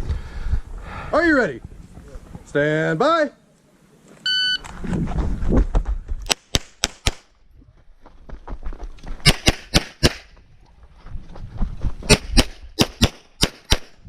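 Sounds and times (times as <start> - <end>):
pistol shots: 9.2 - 10.3, 12.1 - 13.9.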